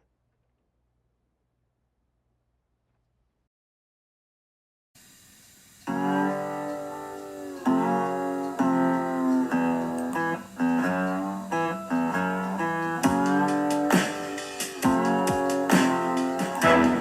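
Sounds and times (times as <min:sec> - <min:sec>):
guitar playing chords: 0:05.9 - 0:17.0.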